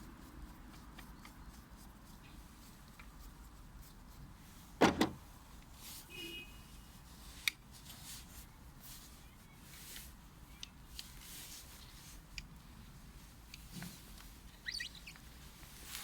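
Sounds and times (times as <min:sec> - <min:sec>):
faint brief squeak: 0:14.6 - 0:15.2.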